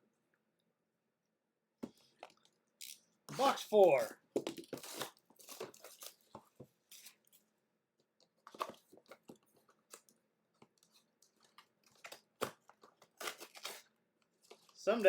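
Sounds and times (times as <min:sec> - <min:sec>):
plastic wrap crinkling: 0:11.4 - 0:13.9.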